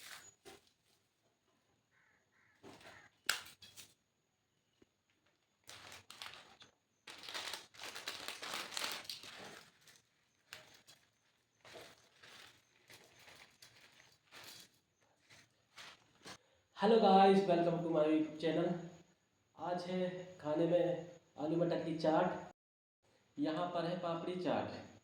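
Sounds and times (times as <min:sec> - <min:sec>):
crinkling and rustling: 0:00.0 - 0:01.5, 0:04.7 - 0:16.4.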